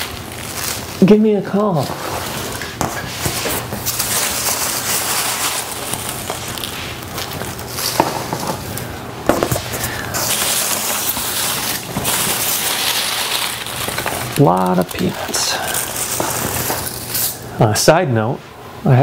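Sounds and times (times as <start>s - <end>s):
packing peanuts rustling: 0.0s - 17.4s.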